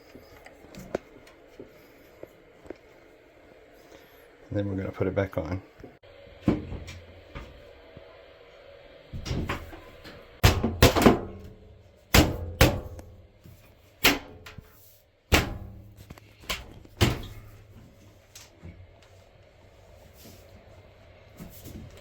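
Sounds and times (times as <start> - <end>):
washing machine panel knocks and thumps: 9.2 - 11.5, 12.2 - 13.0, 17.0 - 17.6.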